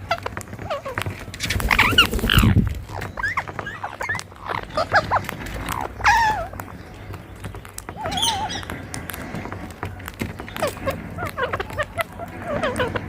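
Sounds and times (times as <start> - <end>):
parakeet squawks: 0.0 - 6.7, 7.9 - 8.8, 10.5 - 13.0
parakeets chirping: 0.0 - 13.0.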